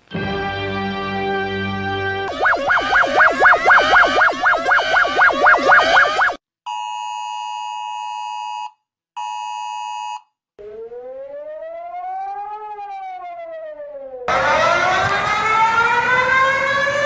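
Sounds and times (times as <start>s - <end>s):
electronic alert tone blasts: 2.3s - 6.4s
rising and falling siren wail: 2.3s - 6.4s, 10.6s - 17.0s.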